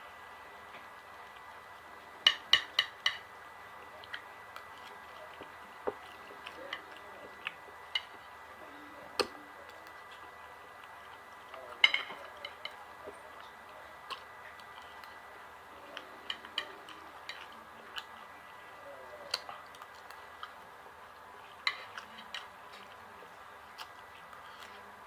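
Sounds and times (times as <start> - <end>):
cutlery clinking against plate: 11.7 - 12.8.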